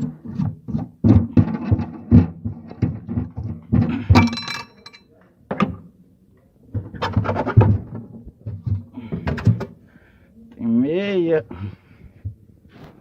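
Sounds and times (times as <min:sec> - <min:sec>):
objects knocking and clattering in car trunk: 0:00.0 - 0:04.6, 0:05.5 - 0:05.9, 0:06.7 - 0:09.8
metallic clinking ring: 0:04.2 - 0:05.1.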